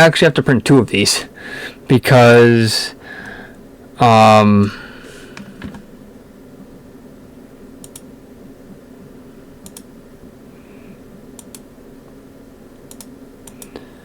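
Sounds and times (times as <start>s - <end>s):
steady low hum: 0.0s - 14.0s
computer clicks: 7.8s - 8.1s, 9.6s - 9.9s, 11.4s - 11.7s, 12.8s - 13.8s.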